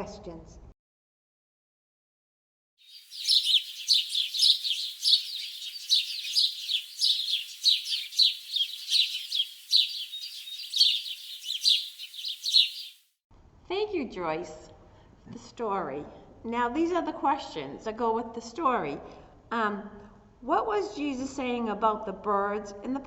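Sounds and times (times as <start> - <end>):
birds chirping: 2.8 - 13.0.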